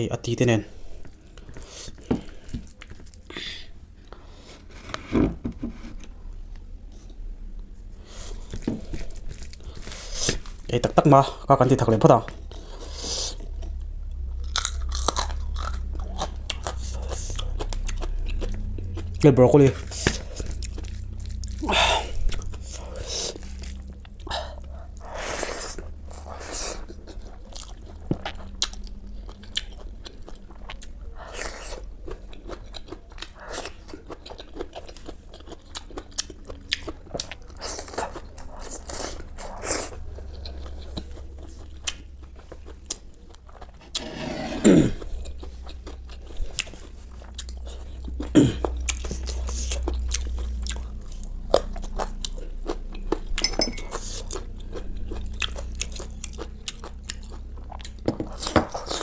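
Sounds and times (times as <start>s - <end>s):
chewing crisp food: 1.0s - 4.8s, 8.0s - 44.0s, 44.8s - 59.0s
low sounds dropping in pitch: 13.4s - 24.7s.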